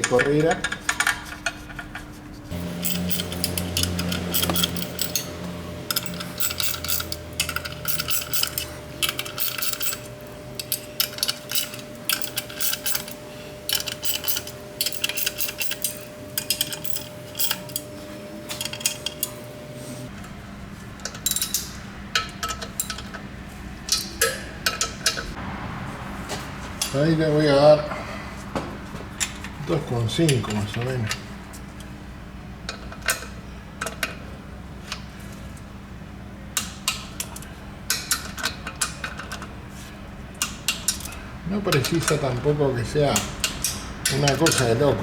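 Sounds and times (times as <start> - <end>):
steady background hum: 0.0 - 45.0
hand tools clinking on metal: 2.5 - 19.6, 40.4 - 45.0.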